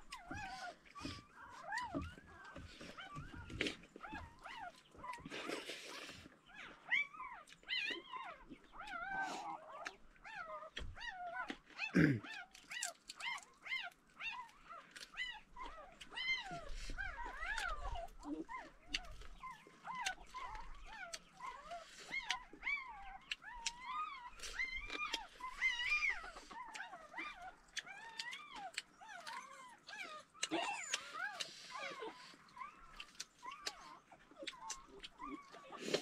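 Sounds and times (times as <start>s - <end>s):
clicking eating sounds: 0.0s - 36.0s
animal whining cries: 19.8s - 36.0s.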